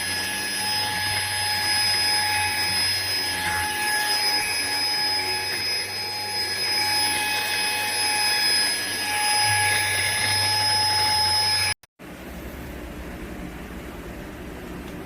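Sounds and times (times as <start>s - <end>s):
handheld vacuum motor whine: 0.0s - 11.8s.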